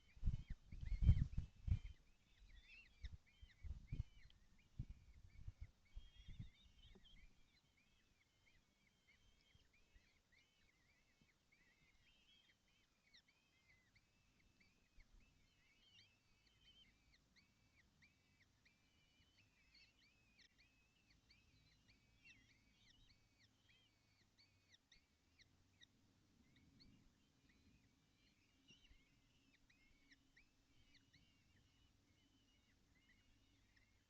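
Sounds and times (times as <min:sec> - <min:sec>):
birds chirping rapidly: 0:00.0 - 0:34.0.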